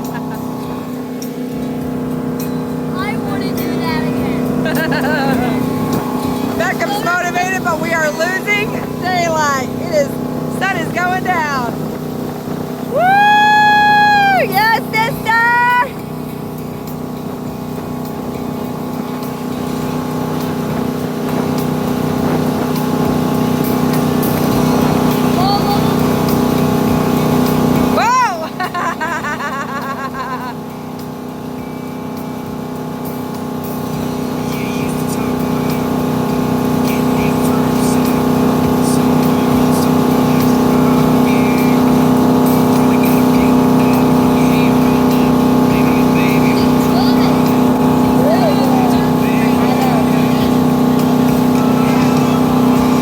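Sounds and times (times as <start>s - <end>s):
motorboat engine running: 0.0s - 53.0s.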